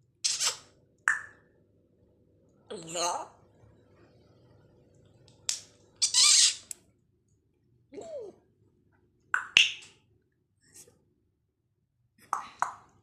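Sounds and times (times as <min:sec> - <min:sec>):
parrot mimicking sounds: 0:06.0 - 0:06.7.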